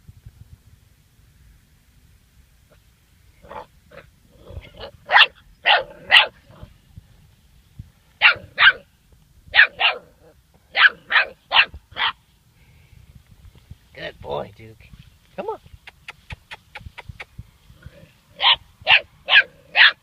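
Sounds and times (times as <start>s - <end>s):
puppy yapping: 9.6s - 10.1s, 10.7s - 12.2s, 18.4s - 20.0s.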